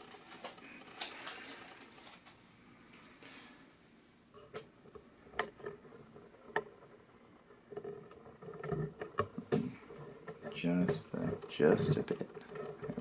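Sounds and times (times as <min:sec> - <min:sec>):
ceiling fan running quietly: 0:00.0 - 0:08.2.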